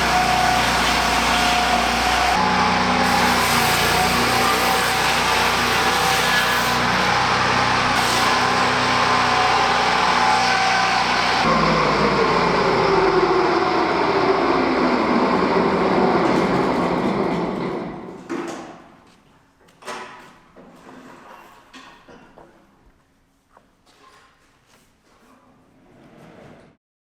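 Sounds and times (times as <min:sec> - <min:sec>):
sawmill engine and blade running: 0:00.0 - 0:18.1.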